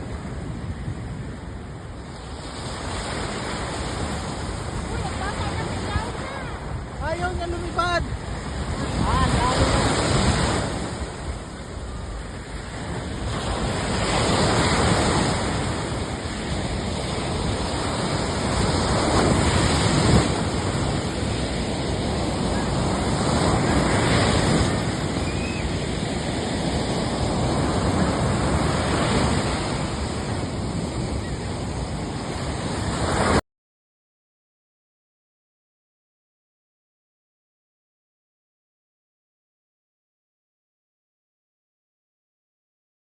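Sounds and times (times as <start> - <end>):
surf rushing: 0.0 - 33.4.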